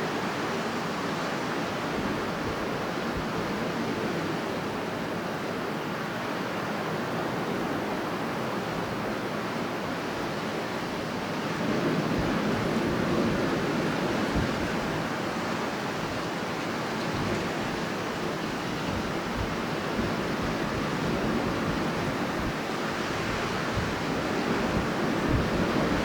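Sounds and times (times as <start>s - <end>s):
strong wind blowing: 6.9s - 26.0s.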